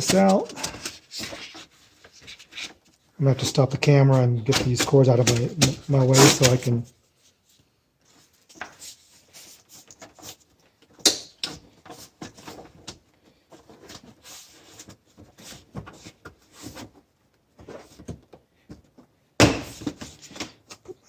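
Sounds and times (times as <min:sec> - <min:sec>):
handling clicks and rustles: 0:00.0 - 0:06.9.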